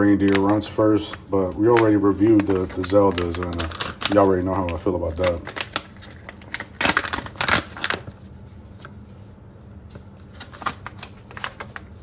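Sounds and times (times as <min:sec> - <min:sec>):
packaging rustling and tapping: 0:00.0 - 0:09.2, 0:09.9 - 0:12.0
faint steady hum: 0:00.0 - 0:12.0.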